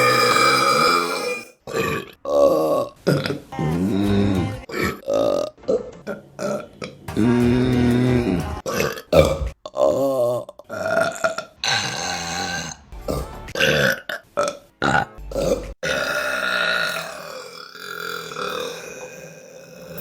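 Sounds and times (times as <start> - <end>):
woman burping: 0.0 - 3.4, 8.6 - 20.0.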